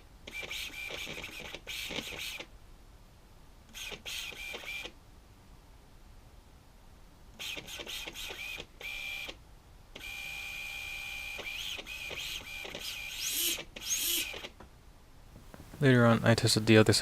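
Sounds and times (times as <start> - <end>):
small electric motor whining: 0.3 - 2.5, 7.4 - 9.4, 10.0 - 14.6.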